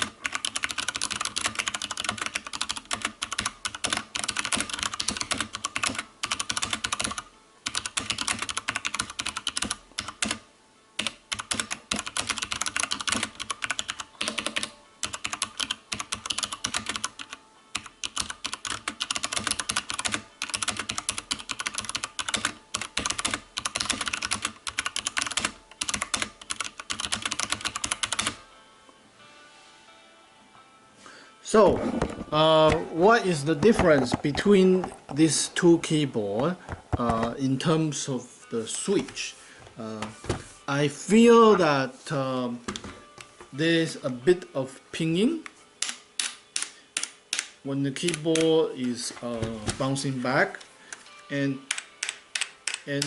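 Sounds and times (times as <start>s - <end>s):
typing on mechanical keyboard: 0.0s - 10.4s, 11.0s - 28.4s, 47.0s - 48.5s.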